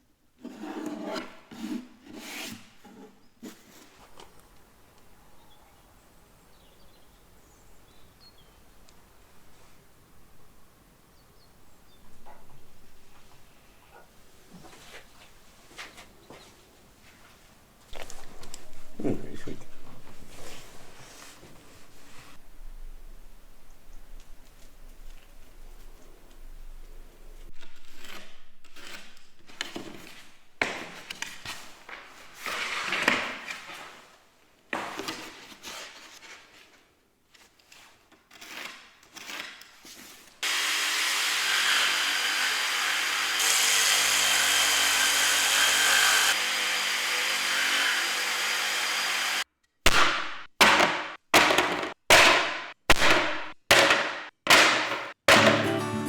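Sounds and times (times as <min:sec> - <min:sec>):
power tool running: 0:40.4 - 0:49.4
rasping strokes on wood: 0:40.6 - 0:49.4
sharp knocks: 0:50.6 - 0:55.8.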